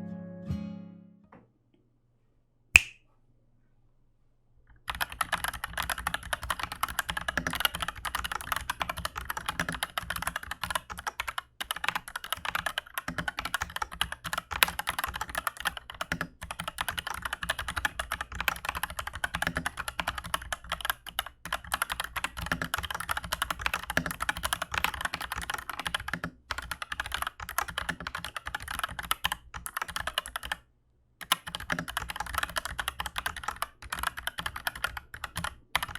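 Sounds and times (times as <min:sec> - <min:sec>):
single sharp click: 0:02.8 - 0:03.0
mechanical keyboard typing: 0:04.9 - 0:30.6, 0:31.2 - 0:35.9.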